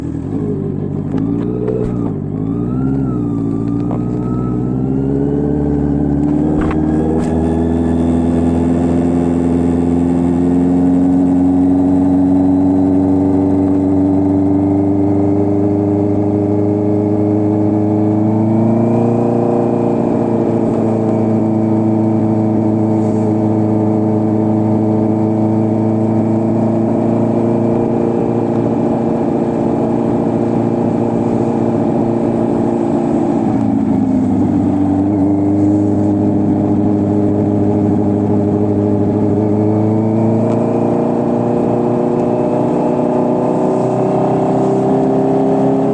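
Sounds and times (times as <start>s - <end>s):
motorcycle engine droning: 0.0s - 45.9s.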